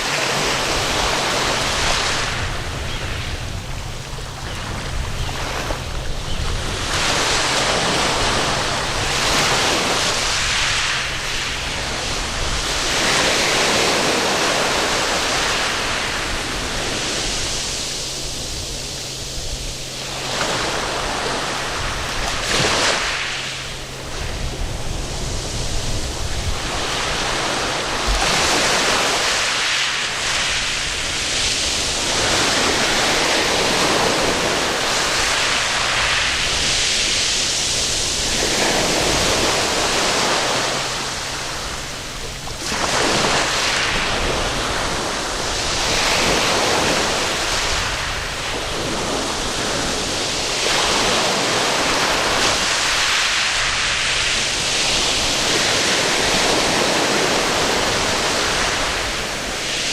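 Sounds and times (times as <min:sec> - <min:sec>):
waves breaking on beach: 0:00.0 - 0:59.9.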